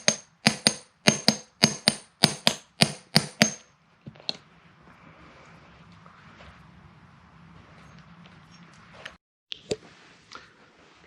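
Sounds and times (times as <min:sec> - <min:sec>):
hammer tapping metal: 0:00.0 - 0:03.7.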